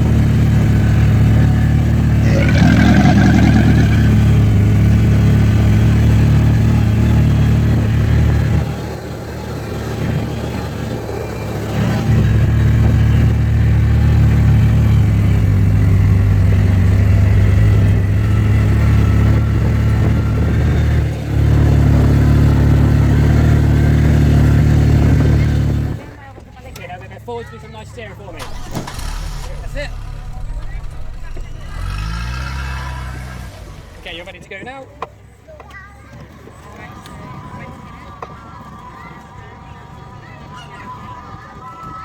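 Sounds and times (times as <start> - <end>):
small engine humming: 28.3 - 34.5.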